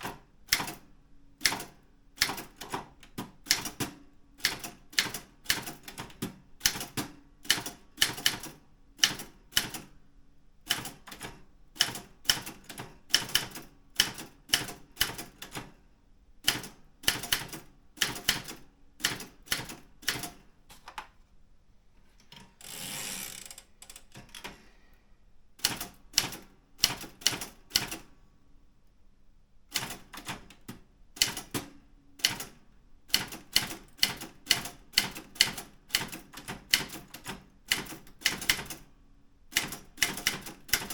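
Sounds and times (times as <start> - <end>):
typewriter rasping: 22.6 - 24.6.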